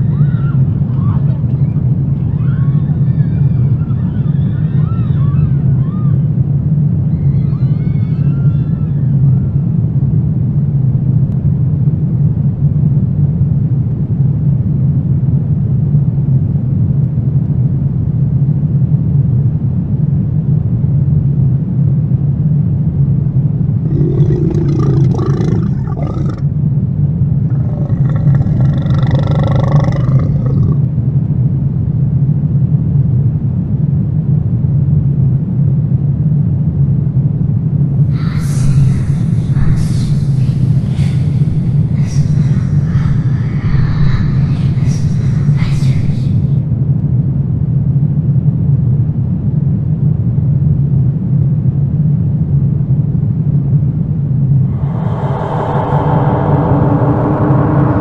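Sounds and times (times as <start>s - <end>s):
low rumbling drone: 23.3s - 31.2s, 38.0s - 46.8s, 54.0s - 58.0s
creature roars: 23.8s - 26.4s, 27.4s - 30.9s.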